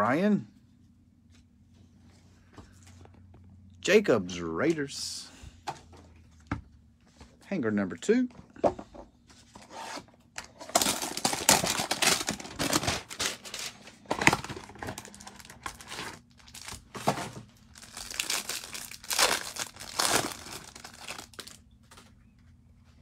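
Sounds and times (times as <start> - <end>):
packaging tearing and crinkling: 10.6 - 21.6.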